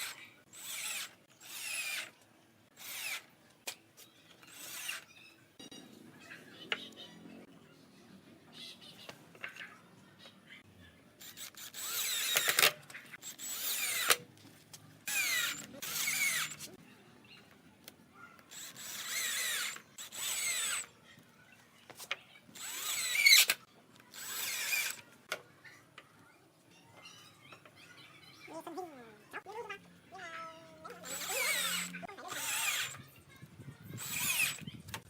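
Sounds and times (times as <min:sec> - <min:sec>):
power drill short bursts: 0:15.1 - 0:16.6, 0:22.6 - 0:25.0, 0:31.0 - 0:33.0, 0:33.9 - 0:34.7.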